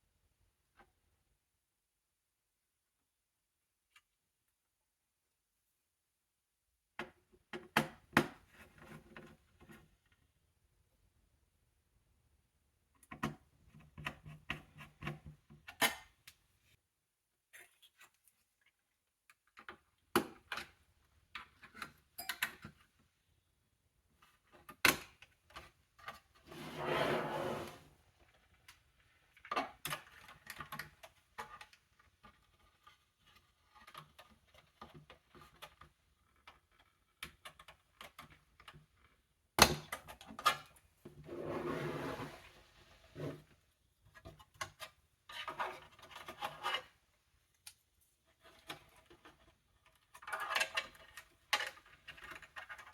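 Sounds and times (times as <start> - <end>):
scraping sounds: 26.5 - 27.9, 41.3 - 43.4.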